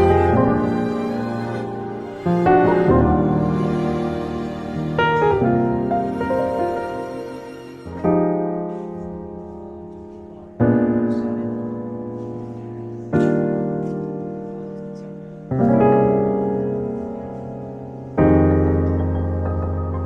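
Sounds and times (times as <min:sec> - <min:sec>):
slow piano chords: 0:00.0 - 0:20.0.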